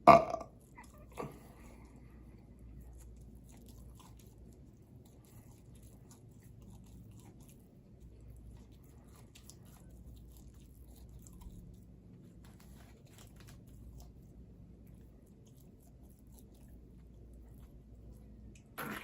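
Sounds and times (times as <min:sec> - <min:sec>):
low steady hum: 0:00.0 - 0:19.0
soft chewing crunches: 0:00.5 - 0:19.0.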